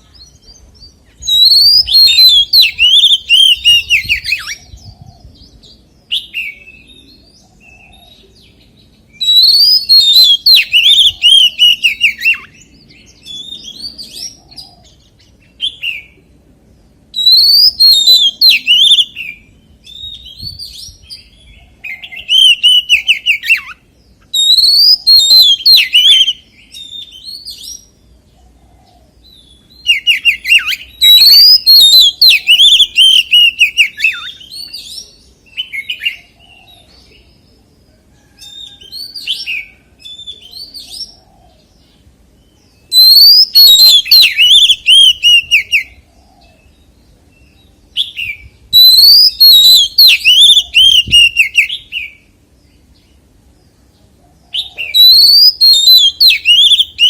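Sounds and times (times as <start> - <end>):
bird singing whistled phrases: 0.0 - 14.8, 17.1 - 27.9, 29.3 - 36.8, 42.7 - 46.6, 48.0 - 52.3, 54.6 - 57.0.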